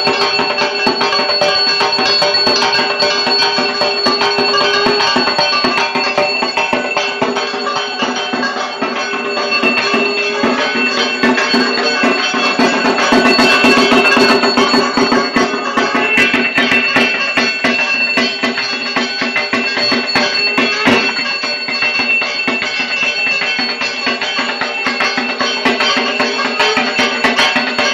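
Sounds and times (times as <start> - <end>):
drums in fast dense rhythm: 0.0 - 27.9.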